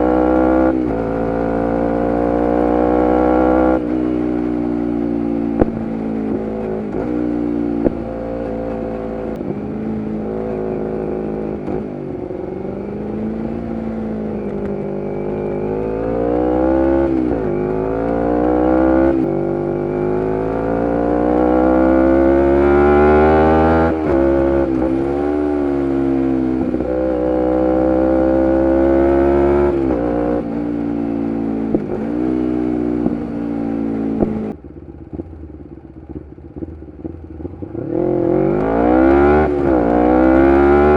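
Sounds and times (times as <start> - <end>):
motorcycle engine accelerating: 0.0 - 40.9
exhaust pops: 5.5 - 7.2, 7.8 - 9.4, 34.1 - 35.3.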